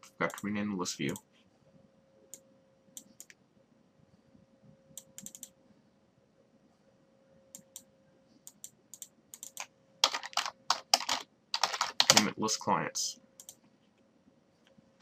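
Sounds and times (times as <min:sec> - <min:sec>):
computer keys clicking: 0:00.0 - 0:00.5, 0:04.9 - 0:05.6, 0:07.5 - 0:07.9, 0:08.5 - 0:12.3, 0:13.4 - 0:13.6
faint steady hum: 0:00.0 - 0:15.0.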